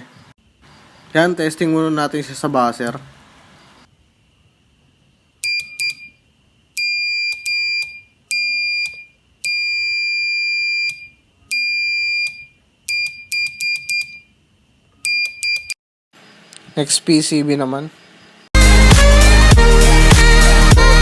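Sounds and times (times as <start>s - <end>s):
alarm buzzer beeping: 5.4s - 6.2s, 6.8s - 14.3s.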